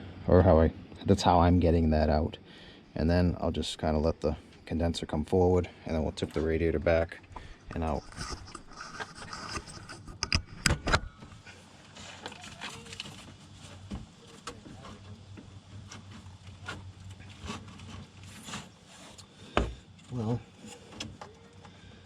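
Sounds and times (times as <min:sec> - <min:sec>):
metal and plastic clicks and scrapes: 0:07.3 - 0:11.2.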